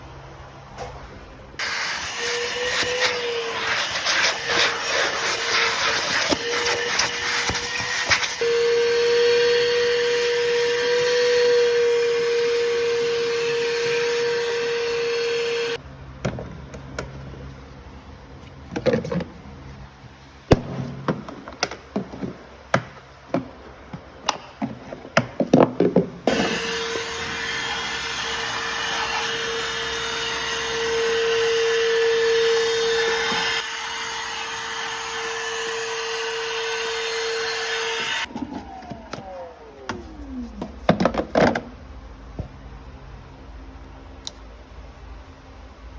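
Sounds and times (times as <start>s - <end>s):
vacuum cleaner running: 1.6s - 15.8s, 26.3s - 41.0s.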